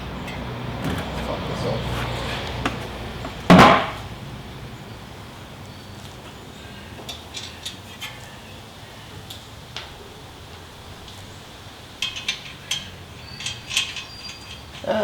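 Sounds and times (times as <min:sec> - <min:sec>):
loud clunk: 0:00.8 - 0:01.4, 0:03.5 - 0:04.0.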